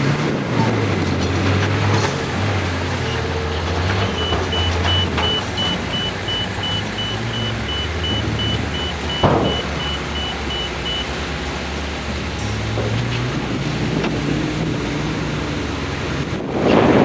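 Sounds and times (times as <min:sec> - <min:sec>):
machine engine running: 0:02.2 - 0:15.1
reversing alarm beeping: 0:04.1 - 0:11.2.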